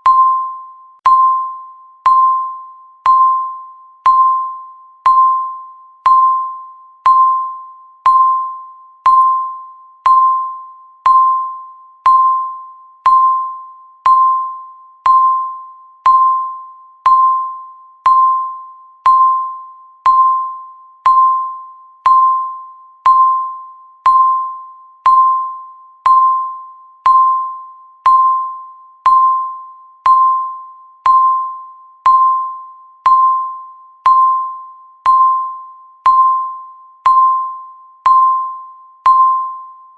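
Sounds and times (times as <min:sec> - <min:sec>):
electronic timer pings: 0:00.0 - 0:39.9.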